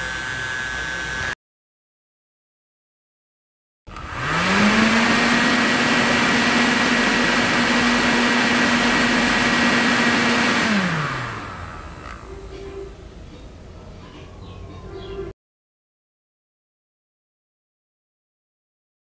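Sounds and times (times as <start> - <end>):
small motor humming: 0.0 - 1.4, 3.9 - 13.0.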